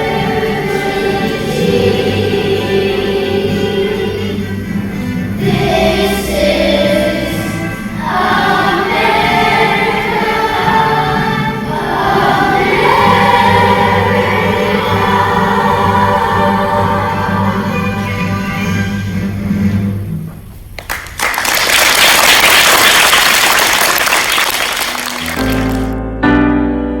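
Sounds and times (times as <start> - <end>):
choir singing held notes: 0.0 - 19.4.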